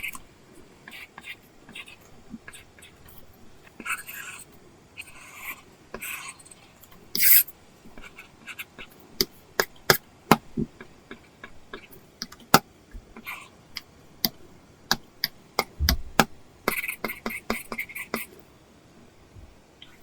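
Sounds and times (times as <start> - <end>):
stylus scratching on tablet screen: 0.0 - 0.2, 0.8 - 9.0, 13.2 - 13.6, 16.7 - 18.4
dull bump: 15.8 - 16.2.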